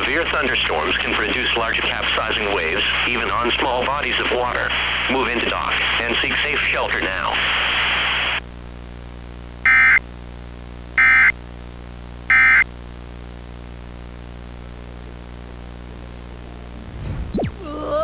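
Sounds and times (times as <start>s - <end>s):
steady low hum: 8.6s - 18.0s
digital data tone bursts: 12.3s - 12.6s
low thump with pitch sweep: 16.8s - 17.7s.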